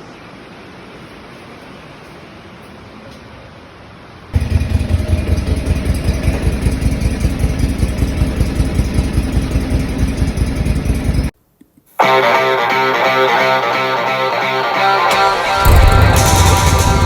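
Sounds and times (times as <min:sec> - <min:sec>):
skid-steer engine running: 0:04.4 - 0:11.4, 0:15.1 - 0:17.0.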